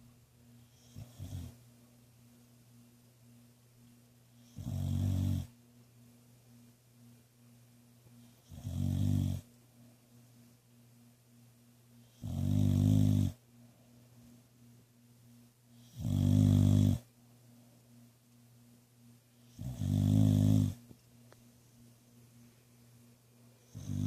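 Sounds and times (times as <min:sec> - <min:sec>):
dog snoring: 0:00.6 - 0:01.6, 0:04.4 - 0:05.6, 0:08.3 - 0:09.5, 0:12.0 - 0:13.4, 0:15.8 - 0:17.1, 0:19.4 - 0:20.8, 0:23.6 - 0:24.0.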